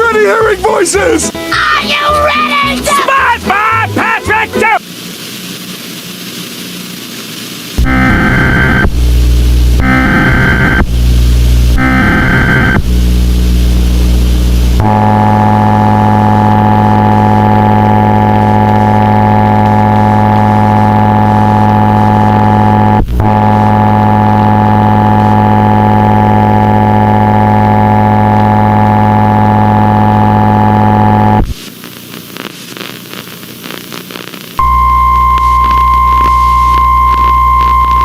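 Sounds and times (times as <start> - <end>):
buzzing tone: 7.8 - 38.0.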